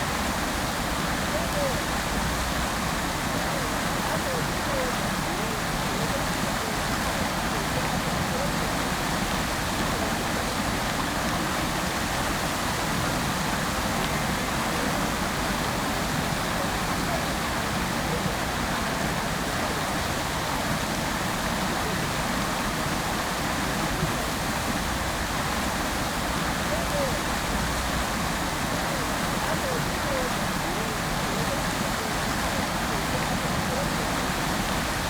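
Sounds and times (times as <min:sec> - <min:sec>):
fountain water splashing into basin: 0:00.0 - 0:35.0.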